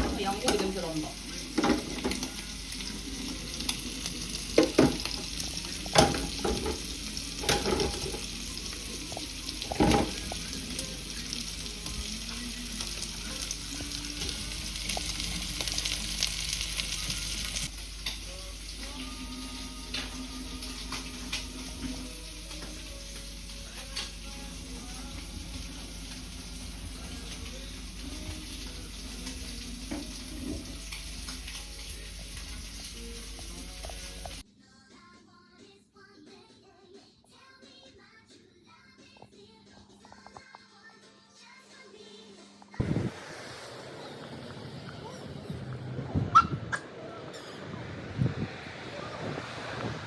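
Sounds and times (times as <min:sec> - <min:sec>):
meat sizzling in a frying pan: 0:00.1 - 0:34.4.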